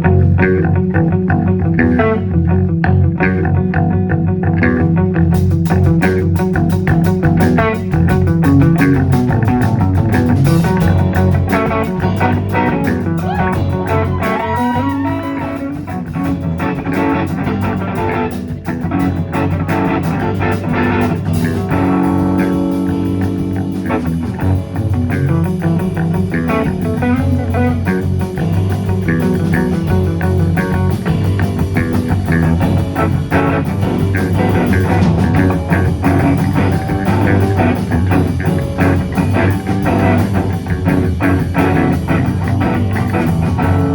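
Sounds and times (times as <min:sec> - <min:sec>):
bent guitar notes: 0:00.0 - 0:43.9
instrumental rock music: 0:00.0 - 0:43.9.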